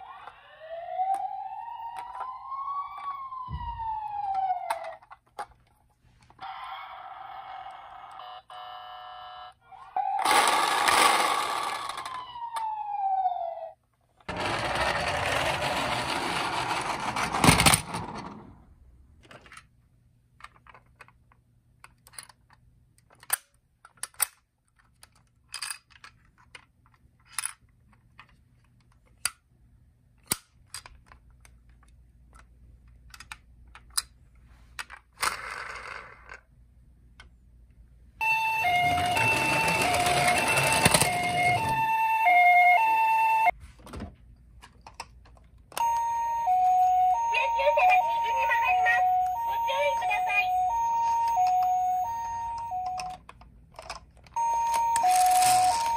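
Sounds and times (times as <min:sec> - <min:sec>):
toy electronic siren: 0:00.0 - 0:05.0, 0:06.4 - 0:15.8, 0:38.2 - 0:43.6, 0:45.8 - 0:53.2, 0:54.4 - 0:55.9
plastic toys clicking: 0:20.4 - 0:29.4, 0:30.2 - 0:34.2, 0:52.5 - 0:55.9.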